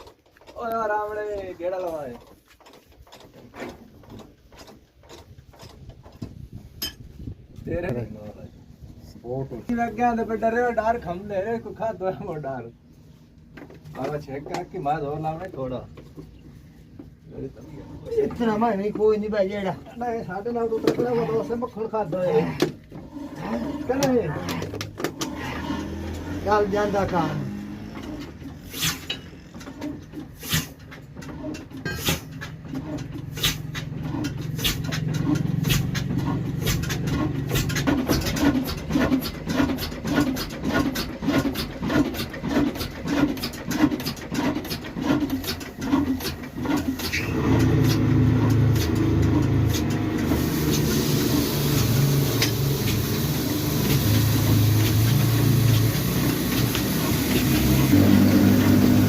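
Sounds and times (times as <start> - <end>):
heavy diesel engine running: 32.4 - 59.0.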